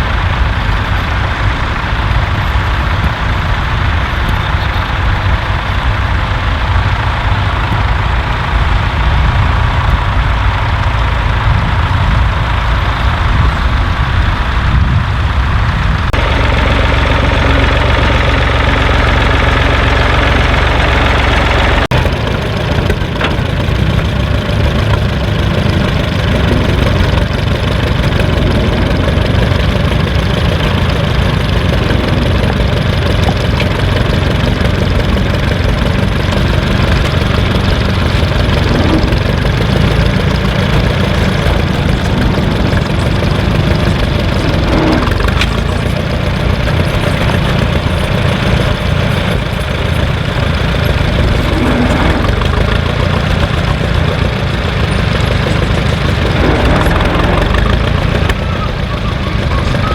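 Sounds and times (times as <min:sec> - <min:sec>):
engine idling: 0:00.0 - 0:59.9.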